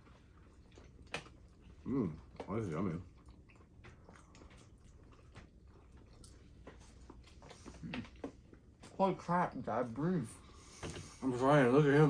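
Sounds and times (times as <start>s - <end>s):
people chewing: 0.0s - 9.0s.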